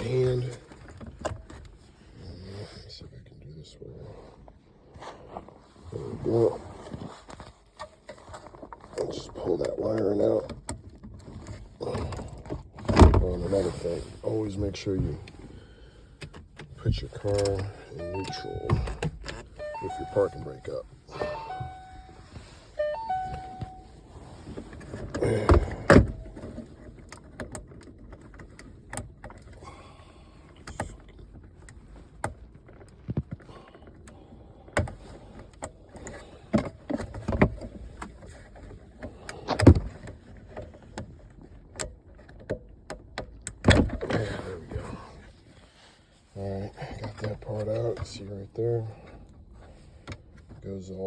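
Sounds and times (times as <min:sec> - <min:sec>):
short beeps: 0:17.9 - 0:24.0.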